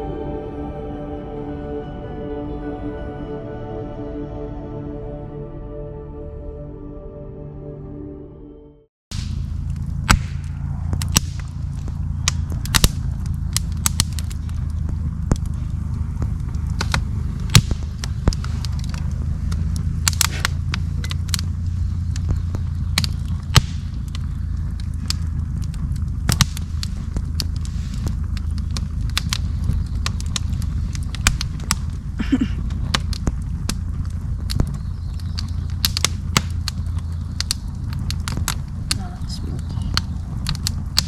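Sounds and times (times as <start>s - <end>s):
low vehicle rumble: 0.0s - 41.0s
sharp clicks and pops: 9.1s - 41.0s.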